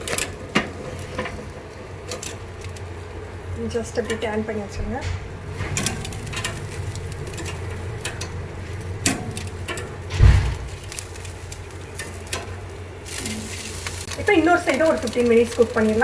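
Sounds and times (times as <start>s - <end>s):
steady low hum: 0.0s - 16.0s
clicks and knocks on wire grill: 9.0s - 11.0s
heavy low thump: 10.1s - 10.8s.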